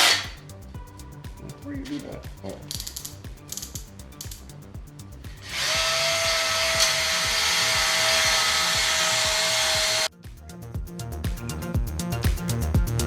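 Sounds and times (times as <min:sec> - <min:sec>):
power drill spinning a hone: 0:00.0 - 0:00.4, 0:05.4 - 0:10.1
background music: 0:00.0 - 0:13.0.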